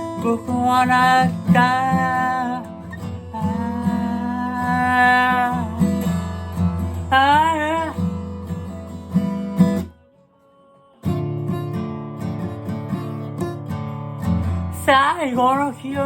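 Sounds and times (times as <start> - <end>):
man singing: 0.0 - 8.4, 14.7 - 16.0
acoustic guitar strumming: 0.0 - 16.0.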